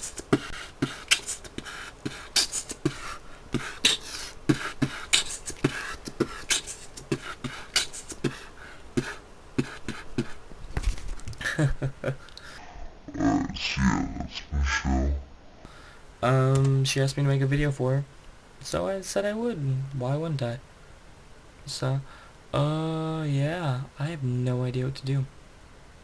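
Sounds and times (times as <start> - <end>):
person beatboxing: 0.0 - 10.4, 12.6 - 15.7.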